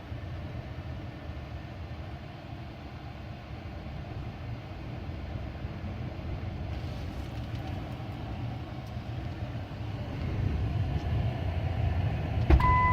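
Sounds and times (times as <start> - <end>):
truck rumbling in strong wind: 3.4 - 12.9.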